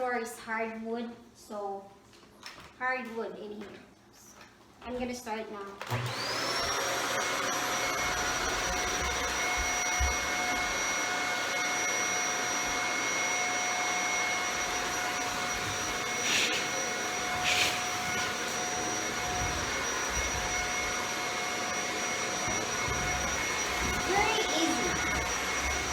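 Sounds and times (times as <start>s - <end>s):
vacuum cleaner motor whine: 5.8s - 25.9s.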